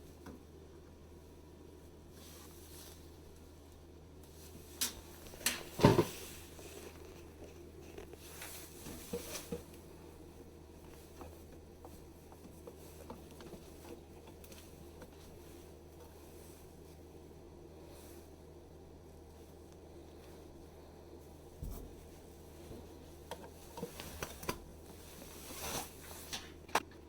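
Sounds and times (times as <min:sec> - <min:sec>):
low steady hum: 0:00.0 - 0:27.0.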